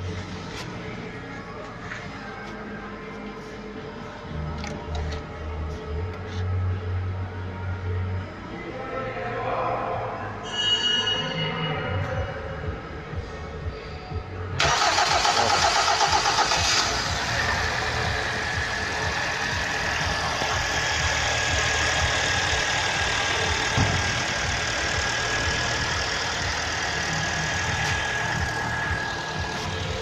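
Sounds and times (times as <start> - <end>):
car engine idling with whine: 14.6 - 30.0
starter motor cranking: 14.6 - 30.0.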